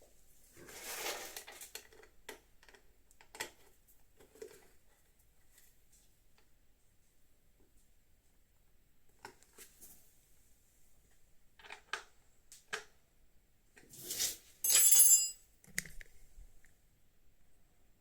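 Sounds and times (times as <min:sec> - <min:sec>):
tools and screws clicking: 0:14.6 - 0:15.9.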